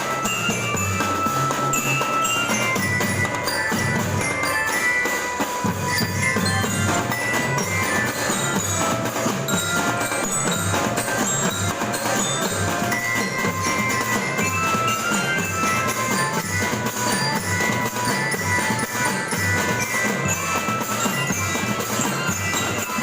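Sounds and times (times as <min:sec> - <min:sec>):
bell-lyre melody: 0:00.0 - 0:23.0
drums beating: 0:00.0 - 0:23.0.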